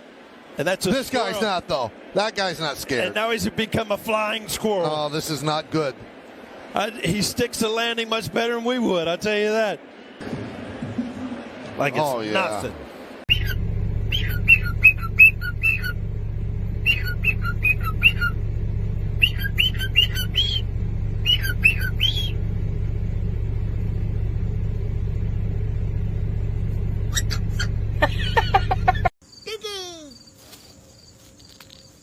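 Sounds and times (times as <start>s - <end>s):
low rumble: 12.8s - 29.1s
bird chirping falling notes: 13.3s - 16.1s, 16.7s - 22.5s.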